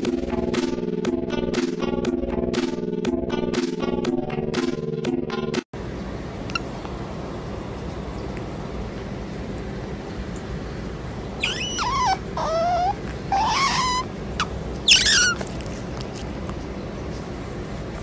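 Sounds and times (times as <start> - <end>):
animal high wavering cries: 11.4 - 15.5.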